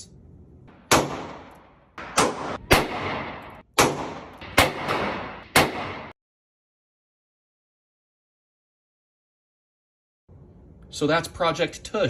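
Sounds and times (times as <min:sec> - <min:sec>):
revolver shots echoing: 0:00.7 - 0:06.2.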